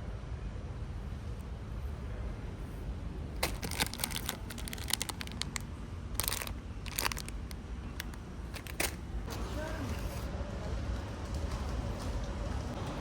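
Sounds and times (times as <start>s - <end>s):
plastic bags crinkling: 3.4s - 9.3s.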